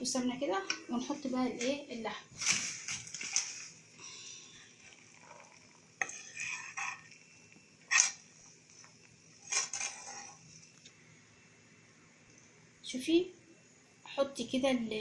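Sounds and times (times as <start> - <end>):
spoon scraping cookware: 6.0 - 7.1, 7.9 - 8.2, 9.4 - 10.5.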